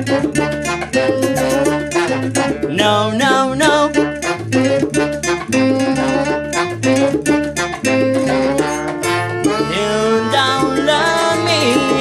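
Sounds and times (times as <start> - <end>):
bass line: 0.0 - 12.0
plucked acoustic guitar: 0.0 - 12.0
steady percussive beat: 0.0 - 12.0.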